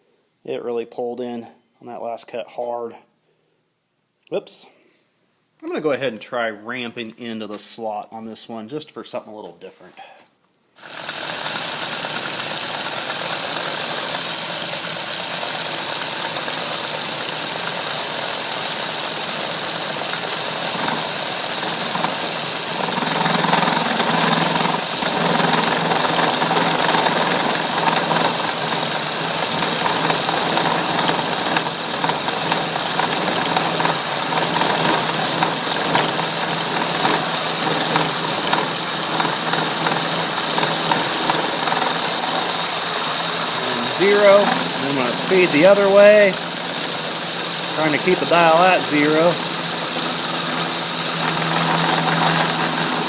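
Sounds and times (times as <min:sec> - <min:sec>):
end mill cutting metal: 0:10.8 - 0:53.0.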